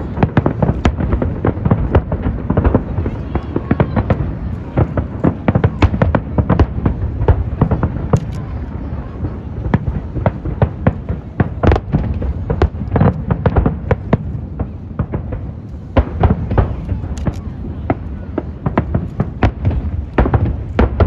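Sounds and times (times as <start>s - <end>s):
fireworks bangs: 0.0s - 21.0s
low continuous rumble: 0.0s - 21.0s.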